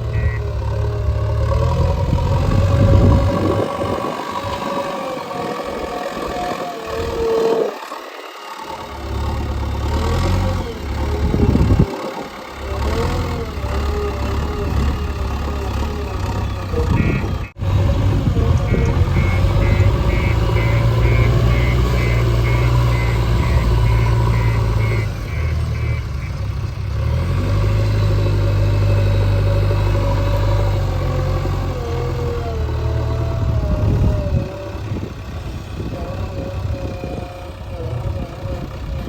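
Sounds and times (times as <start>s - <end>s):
high beeping: 0.0s - 0.8s, 16.4s - 17.5s, 18.4s - 26.4s
wavering whine: 0.0s - 9.9s
diesel engine under load: 0.0s - 39.0s.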